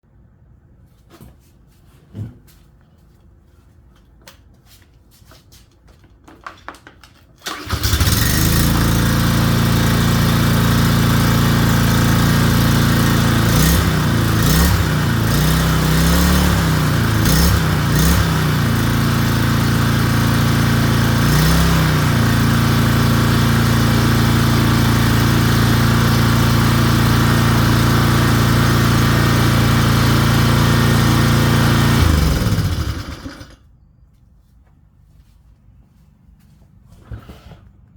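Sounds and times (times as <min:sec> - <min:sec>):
pressure washer engine running: 0:07.5 - 0:33.6.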